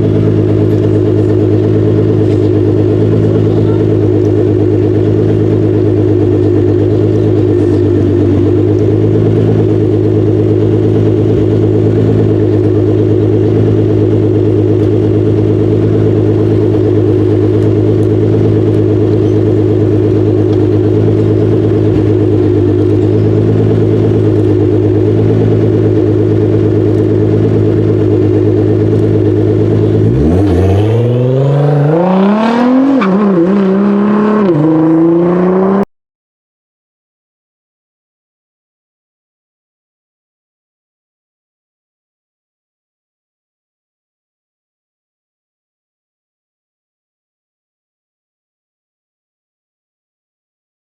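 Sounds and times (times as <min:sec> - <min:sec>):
car engine droning and revving: 0:00.0 - 0:35.9.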